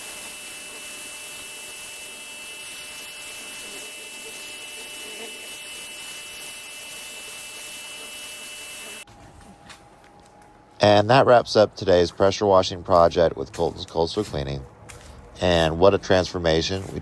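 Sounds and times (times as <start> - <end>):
pressure washer spraying: 0.0 - 9.1.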